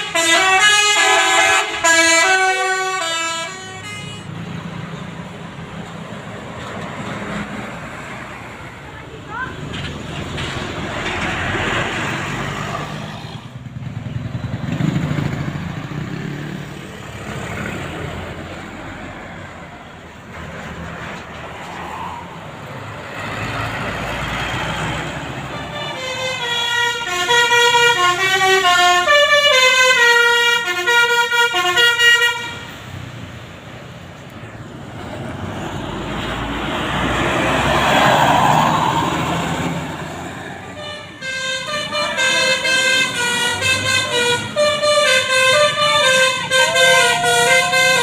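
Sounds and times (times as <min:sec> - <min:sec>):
bus musical horn melody: 0:00.0 - 0:04.5, 0:25.3 - 0:32.8, 0:40.7 - 0:48.0
vehicle engine and road noise: 0:00.0 - 0:48.0.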